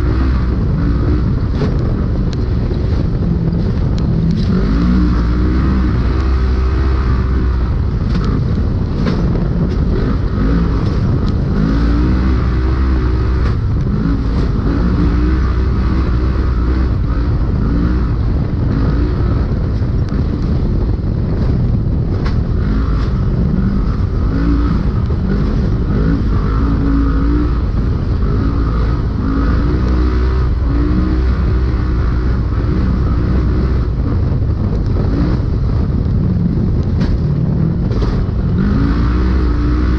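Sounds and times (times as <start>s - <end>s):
engine revving: 0.0s - 39.9s
chassis knocks and rattles: 8.0s - 10.0s, 36.8s - 38.5s.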